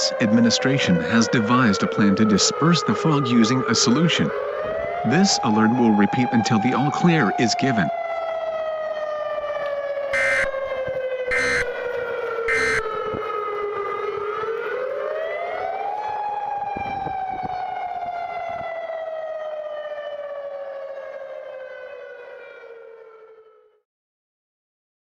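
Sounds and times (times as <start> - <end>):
civil defense siren: 0.0 - 23.9
digital data tones: 10.2 - 10.5, 11.3 - 11.7.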